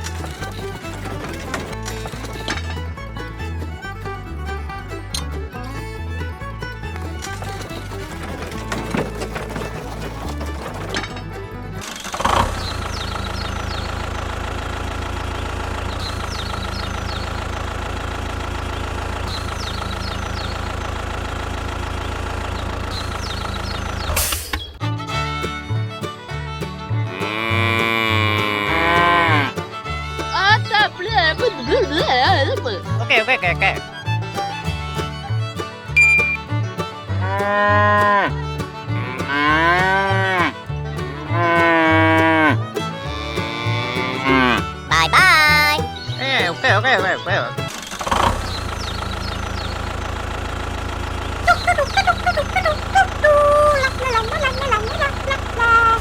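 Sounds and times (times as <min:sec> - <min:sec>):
tractor engine idling: 0:00.0 - 0:56.0
cow mooing: 0:27.1 - 0:29.6, 0:37.2 - 0:38.3, 0:39.0 - 0:40.5, 0:41.2 - 0:45.0
high chirps: 0:36.0 - 0:36.5.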